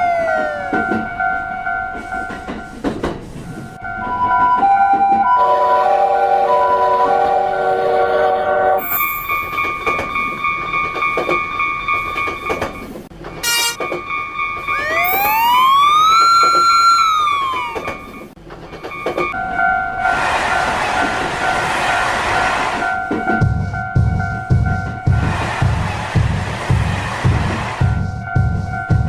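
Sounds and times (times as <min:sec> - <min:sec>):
level-crossing warning bell: 0:00.0 - 0:25.2, 0:27.8 - 0:29.0
train rushing past: 0:00.0 - 0:29.0
lower-pitched crossing bell: 0:08.8 - 0:12.4, 0:22.8 - 0:25.1, 0:28.1 - 0:29.0
horn-like tone: 0:13.4 - 0:13.8.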